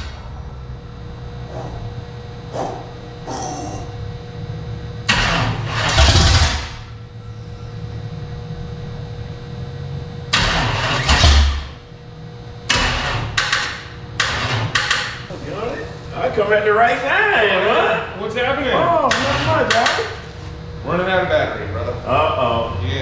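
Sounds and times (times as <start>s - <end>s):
engine starter cranking: 5.1s - 6.9s, 19.1s - 20.2s.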